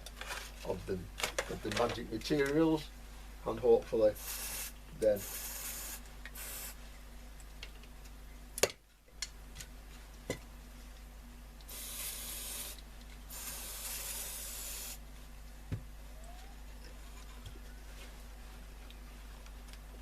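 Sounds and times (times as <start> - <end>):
steady low hum: 0.0 - 20.0
aerosol spray hissing: 4.2 - 6.8, 11.7 - 15.0.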